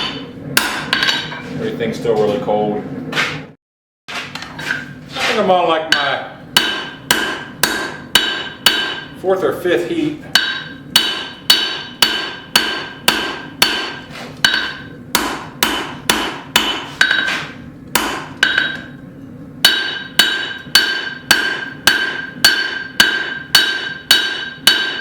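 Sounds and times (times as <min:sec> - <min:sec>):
hammer striking steel on anvil: 0:00.0 - 0:01.4, 0:05.9 - 0:09.2, 0:10.3 - 0:19.0, 0:19.6 - 0:25.0.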